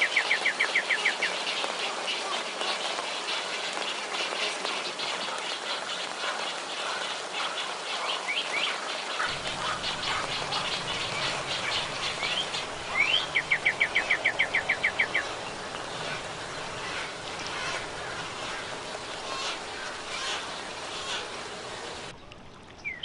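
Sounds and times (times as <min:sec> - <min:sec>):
wild birds chirping: 0:00.0 - 0:23.0
bird rising note and chirps: 0:09.3 - 0:18.8.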